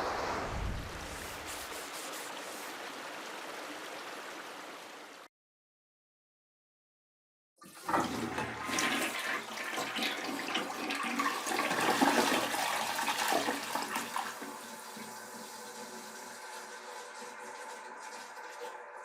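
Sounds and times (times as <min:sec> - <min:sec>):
toilet flushing: 0:07.6 - 0:19.0.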